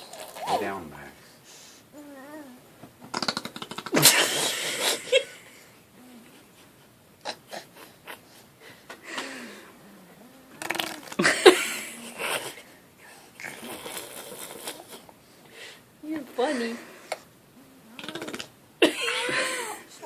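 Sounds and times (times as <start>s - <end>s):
child making fake fart noises: 0.0s - 0.7s, 3.1s - 4.1s, 18.0s - 18.5s.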